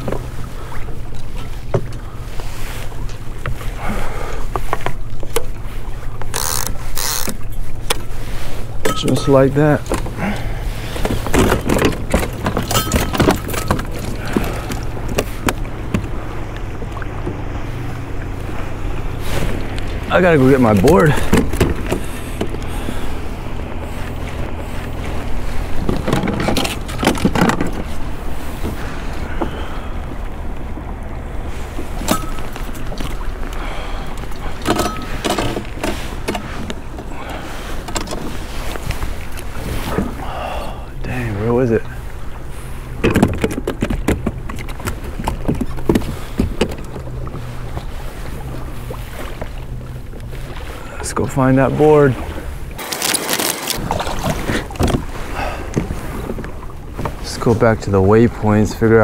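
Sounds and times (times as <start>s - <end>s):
gear knocks and rattles: 4.4s - 40.2s, 41.0s - 51.7s, 52.4s - 59.0s
gear knocking and clicking: 6.2s - 8.0s
steady low rumble: 7.6s - 52.8s.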